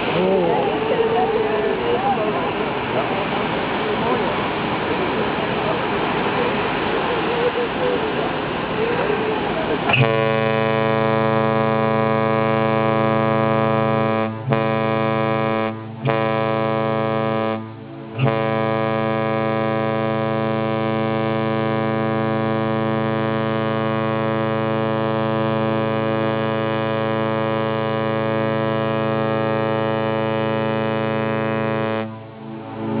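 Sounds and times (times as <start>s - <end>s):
ship's horn blasts: 0.0s - 33.0s.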